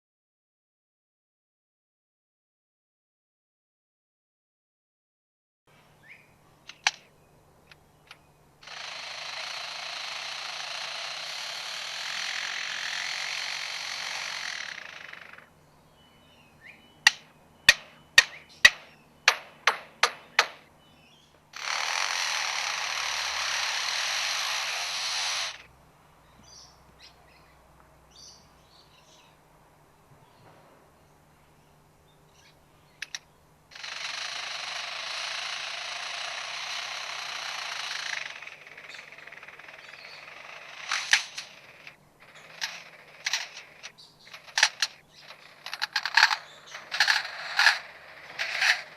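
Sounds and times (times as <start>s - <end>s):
lyrebird machine-like noise: 6.0s - 25.7s, 32.3s - 48.9s
lyrebird hammer-like strikes: 17.0s - 20.7s.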